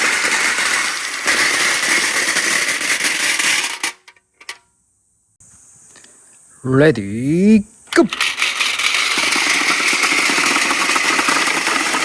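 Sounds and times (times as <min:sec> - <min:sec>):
marbles rolling and clattering: 0:00.0 - 0:04.6, 0:07.9 - 0:12.0.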